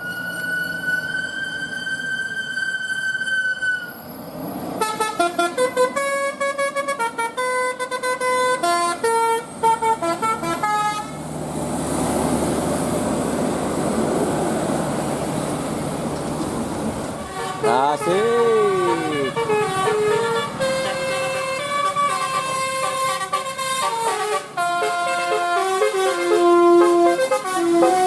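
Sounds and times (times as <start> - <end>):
bus horn playing a tune: 4.8 - 11.3, 17.2 - 28.0.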